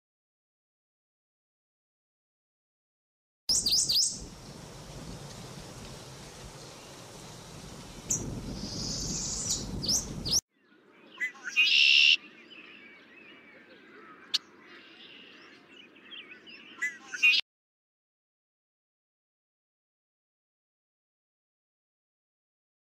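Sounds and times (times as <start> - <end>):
songbirds chirping: 3.5 - 17.4.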